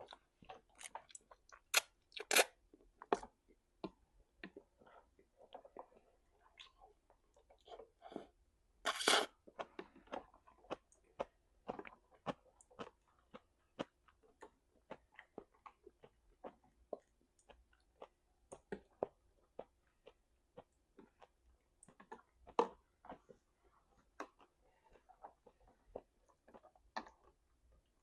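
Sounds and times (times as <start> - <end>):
person chewing food: 0.0 - 28.0.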